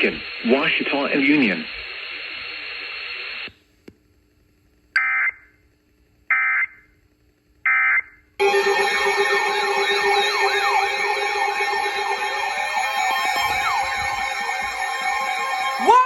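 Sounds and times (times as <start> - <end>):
emergency alert tones: 8.4 - 16.0
screeching digital data bursts: 8.4 - 16.0
warbling siren-like tones: 8.4 - 16.0.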